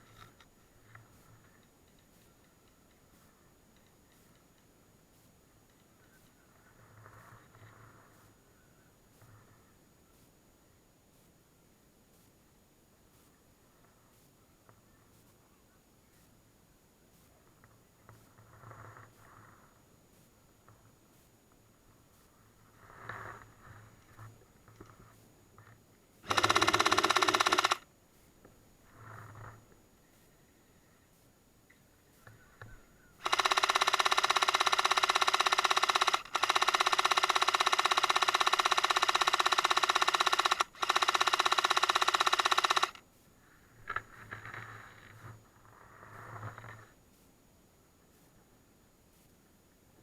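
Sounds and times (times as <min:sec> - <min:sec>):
faint muffled sounds: 0:00.0 - 0:26.3, 0:27.8 - 0:33.3, 0:43.0 - 0:50.0
toy gun firing full-auto burst: 0:26.2 - 0:27.9, 0:33.2 - 0:43.0.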